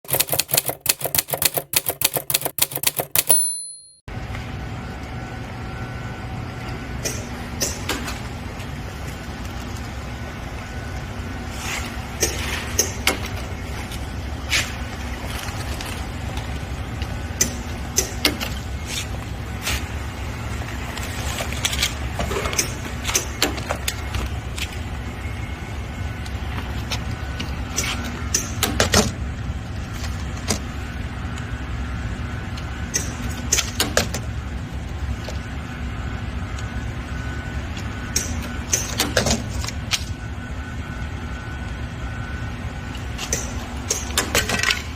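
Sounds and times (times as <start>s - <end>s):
sharp mechanical clicks: 0.0s - 3.6s.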